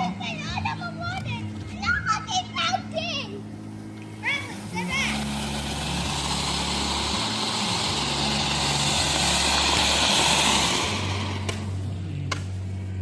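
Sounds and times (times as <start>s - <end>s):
firework fountain hissing: 4.2s - 12.0s.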